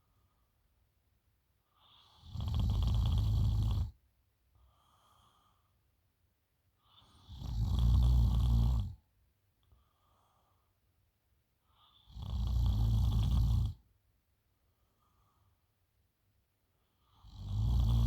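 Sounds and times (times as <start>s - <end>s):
faint breath: 0.0s - 0.8s, 4.5s - 6.0s, 9.6s - 10.9s, 14.6s - 15.8s
woman snoring: 1.9s - 3.9s, 7.2s - 9.0s, 12.1s - 13.8s, 17.2s - 18.0s.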